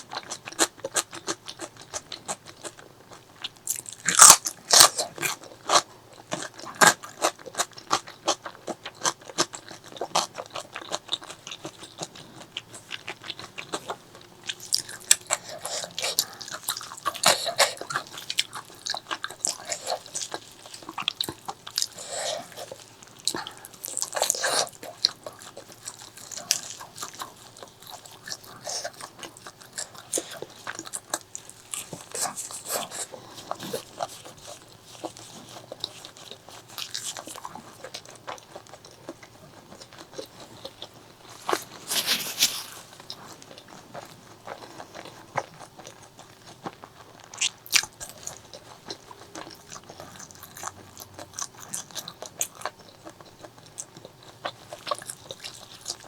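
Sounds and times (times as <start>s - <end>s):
person chewing with mouth clicks: 0.0s - 56.0s.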